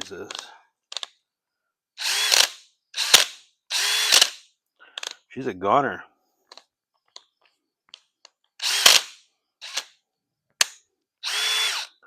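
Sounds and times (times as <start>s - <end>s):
sharp clicks and cracking: 0.0s - 1.2s
power drill bursts: 2.0s - 4.4s, 8.6s - 9.9s, 11.2s - 12.0s.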